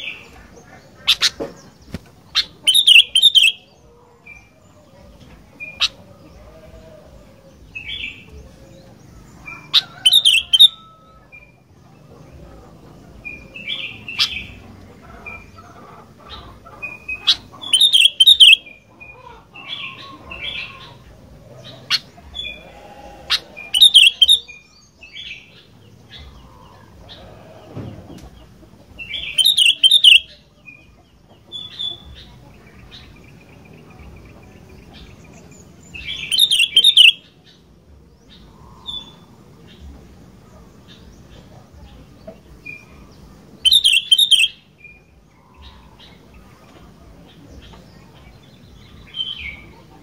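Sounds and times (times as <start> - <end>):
bulbul singing bubbling phrases: 2.5 - 3.7, 17.7 - 18.6, 23.7 - 24.5
sharp whistled bird notes: 2.7 - 3.6.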